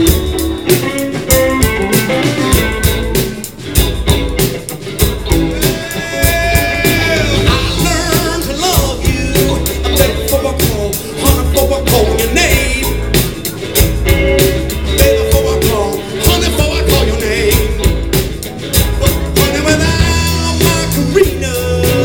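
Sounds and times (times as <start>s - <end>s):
bass guitar: 0.0s - 22.0s
electric guitar bending notes: 0.0s - 22.0s
live blues band playing: 0.0s - 22.0s
steady drum beat: 0.0s - 22.0s
person singing: 5.3s - 13.4s, 14.7s - 22.0s.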